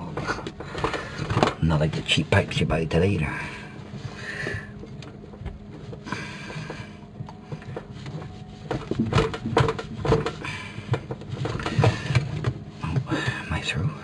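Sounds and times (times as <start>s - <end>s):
tool scraping metal pipe: 7.5s - 13.1s.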